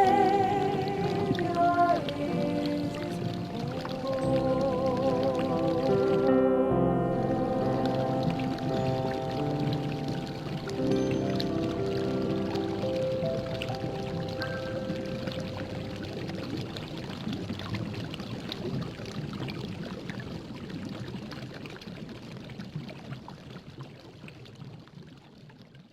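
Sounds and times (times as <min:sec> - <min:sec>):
music with long held notes: 0:00.0 - 0:18.0
soup boiling and bubbling: 0:07.4 - 0:25.9.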